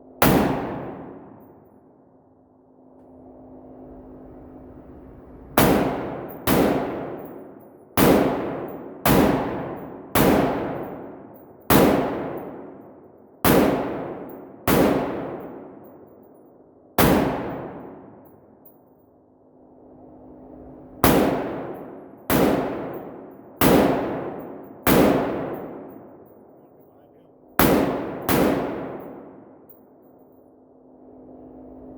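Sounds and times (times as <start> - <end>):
rifle gunshots: 0.2 - 1.5, 5.6 - 7.4, 8.0 - 12.8, 13.4 - 15.9, 17.0 - 18.2, 21.0 - 26.2, 27.6 - 29.6.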